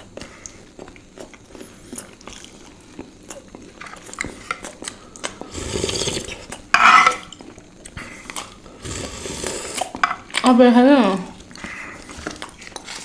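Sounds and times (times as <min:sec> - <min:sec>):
cutlery tapping on dishes: 0:06.8 - 0:07.2.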